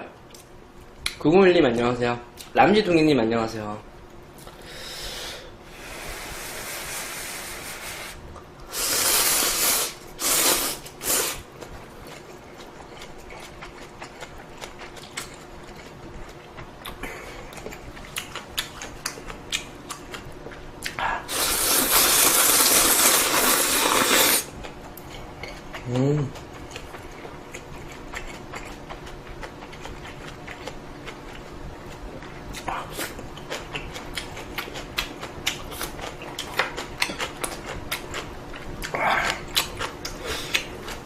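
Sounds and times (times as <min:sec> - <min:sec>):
slurping noodles: 0:05.8 - 0:11.4, 0:21.3 - 0:24.5
soft chewing: 0:11.6 - 0:21.3, 0:23.9 - 0:41.0.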